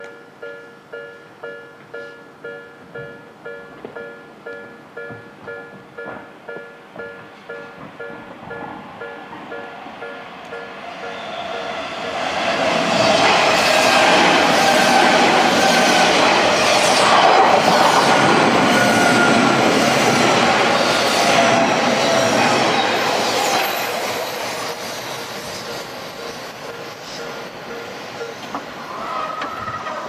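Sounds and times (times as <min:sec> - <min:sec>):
train wheels rushing on rail: 0:05.1 - 0:30.0
wheel squeal: 0:27.0 - 0:30.0.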